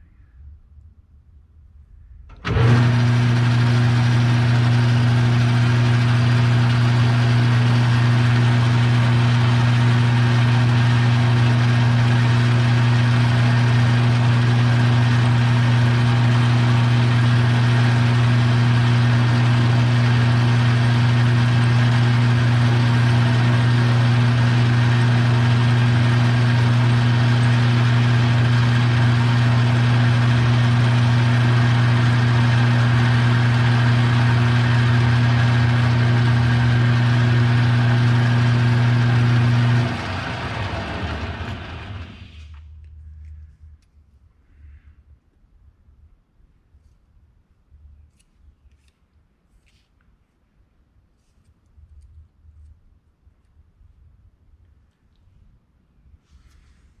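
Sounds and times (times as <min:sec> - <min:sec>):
electric machine humming and whirring: 0:02.2 - 0:43.4.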